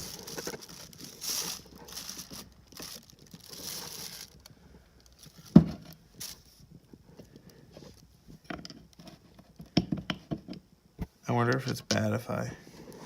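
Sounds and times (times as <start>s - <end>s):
engine parts rustling and scraping: 0.0s - 9.8s.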